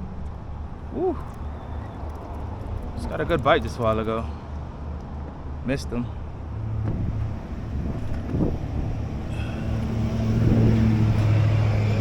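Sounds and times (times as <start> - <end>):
motor engine rumbling: 0.0 - 12.0.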